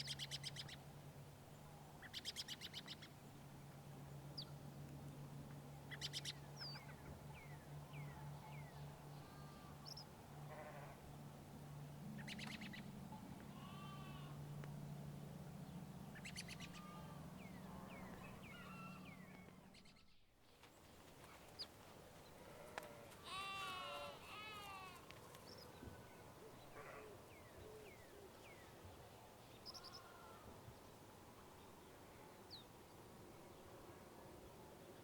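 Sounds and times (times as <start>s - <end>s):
low steady hum: 0.0s - 35.0s
goat bleating: 9.1s - 9.8s, 10.5s - 11.0s, 13.5s - 14.4s, 16.7s - 17.3s, 22.8s - 25.0s
small birds chirping: 16.1s - 21.8s.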